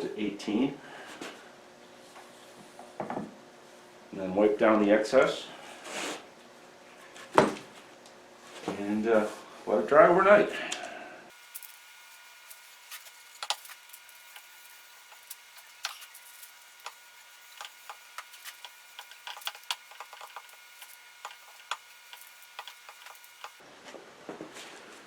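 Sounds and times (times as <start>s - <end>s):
quiet hiss: 11.3s - 23.6s.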